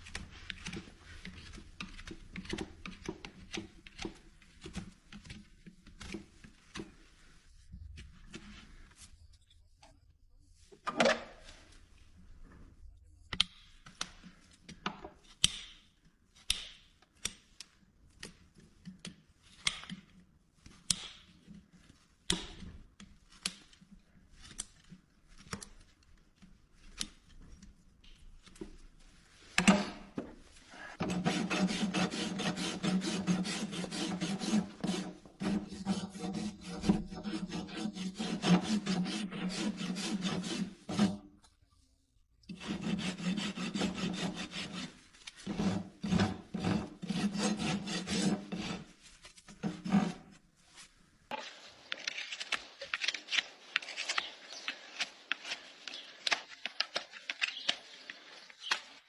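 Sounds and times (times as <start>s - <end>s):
rasp filing a hoof: 30.7s - 41.3s, 42.5s - 50.3s.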